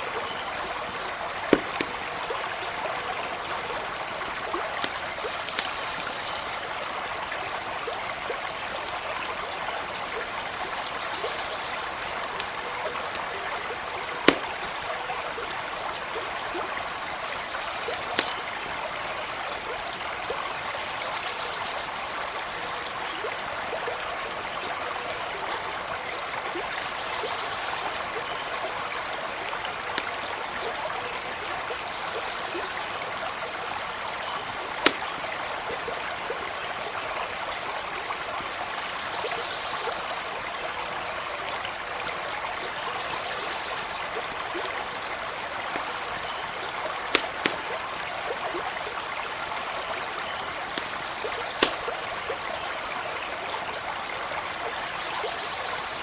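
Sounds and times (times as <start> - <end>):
campfire crackling pops: 0.0 - 18.8, 23.2 - 27.1, 27.8 - 31.3, 34.4 - 37.0, 44.2 - 54.0
stream babbling: 0.0 - 56.0.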